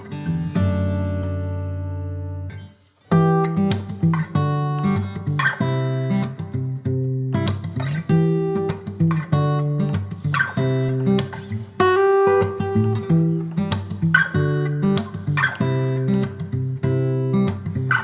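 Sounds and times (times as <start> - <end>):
strummed acoustic guitar: 0.0 - 18.0.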